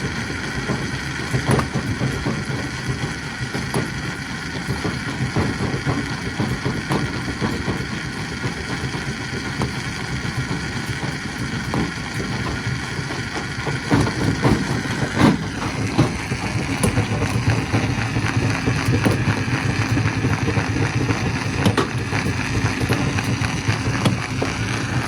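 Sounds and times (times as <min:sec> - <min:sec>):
stone crusher drone: 0:02.3 - 0:25.0.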